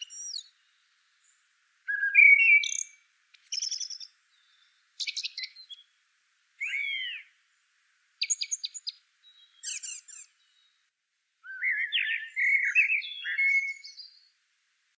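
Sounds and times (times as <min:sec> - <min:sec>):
bird chirping and warbling: 0:01.9 - 0:05.9, 0:06.6 - 0:07.3, 0:08.2 - 0:10.8, 0:11.4 - 0:14.3.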